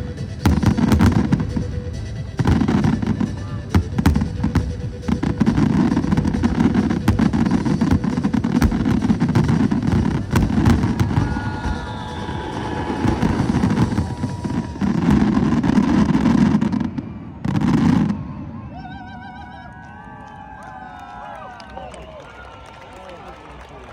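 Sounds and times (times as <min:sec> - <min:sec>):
fireworks booming and crackling: 0:00.0 - 0:18.7.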